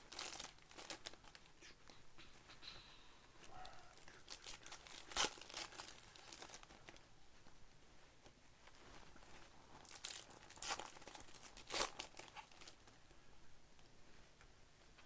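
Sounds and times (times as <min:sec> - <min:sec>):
sharp plastic crackle: 0:00.0 - 0:01.6, 0:03.4 - 0:07.0, 0:08.6 - 0:13.1
cards and plastic wrappers crinkling: 0:00.0 - 0:02.0, 0:03.4 - 0:07.1, 0:08.6 - 0:13.2.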